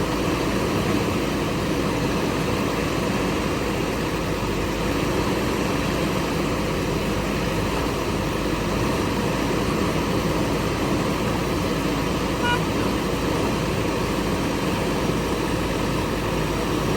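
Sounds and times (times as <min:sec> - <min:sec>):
diesel engine running: 0:00.0 - 0:16.9
short high tone: 0:12.4 - 0:13.1.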